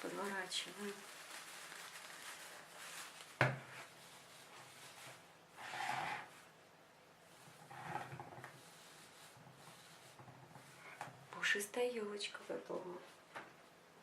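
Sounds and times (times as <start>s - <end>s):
tinsel rustling: 0.0s - 5.3s.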